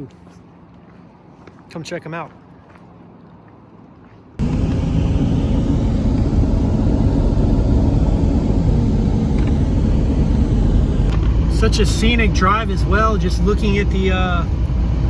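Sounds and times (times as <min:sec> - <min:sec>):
vehicle road and wind rumble: 0:04.4 - 0:15.0.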